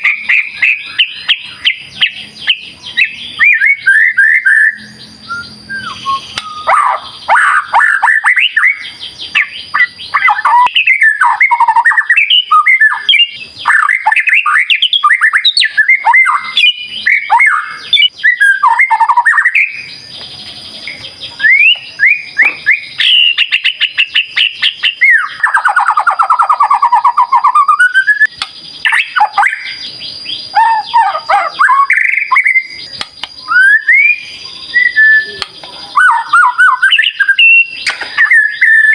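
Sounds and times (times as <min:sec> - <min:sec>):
bird singing whistles: 0:00.0 - 0:38.9.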